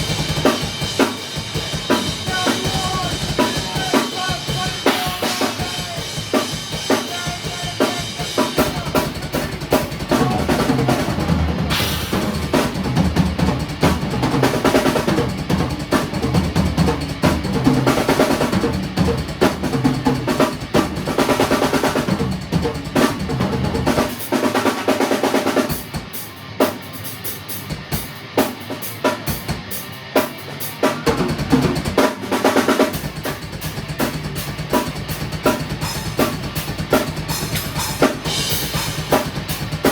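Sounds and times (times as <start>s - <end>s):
drum kit playing: 0.0s - 39.9s.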